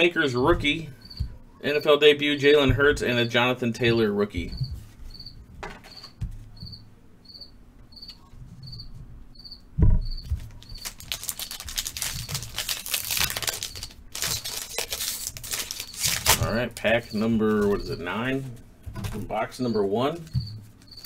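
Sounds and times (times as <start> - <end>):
cricket chirping: 1.0 - 1.3, 4.6 - 11.6
thump: 9.8 - 10.2
foil wrapper crinkling and tearing: 10.3 - 17.1.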